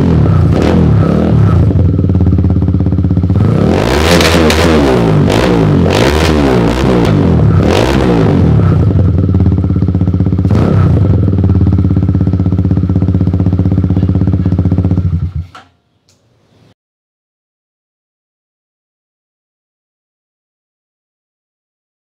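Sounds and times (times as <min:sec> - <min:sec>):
motorcycle engine revving: 0:00.0 - 0:15.6
motorcycle engine idling: 0:01.6 - 0:03.4, 0:08.6 - 0:15.5.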